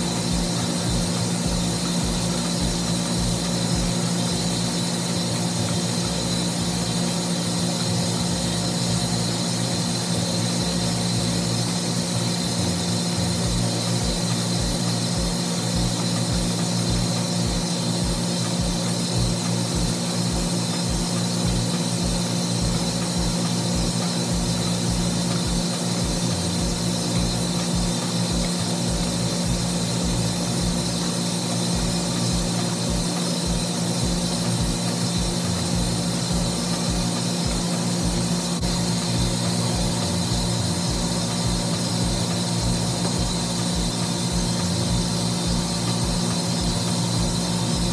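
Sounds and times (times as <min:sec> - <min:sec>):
machinery hum: 0:00.0 - 0:47.9
thin high whine: 0:00.0 - 0:47.9.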